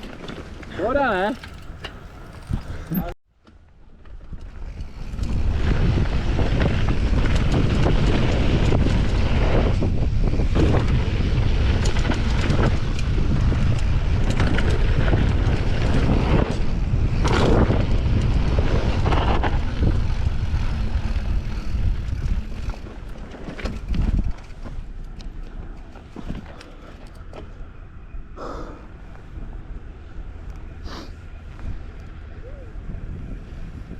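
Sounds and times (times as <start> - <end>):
bike knocking and rattling: 0.0 - 27.7
wind rushing over microphone: 4.2 - 26.6, 27.2 - 33.9.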